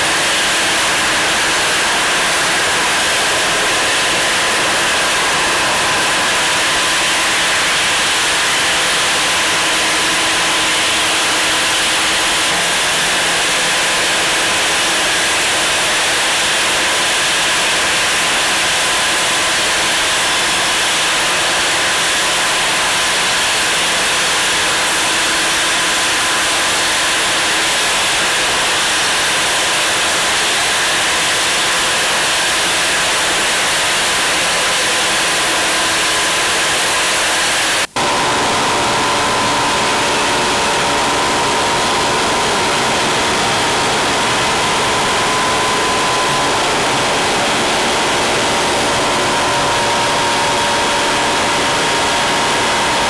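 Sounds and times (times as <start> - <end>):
sanding machine hissing: 0.0 - 53.0
faint steady whine: 37.7 - 53.0.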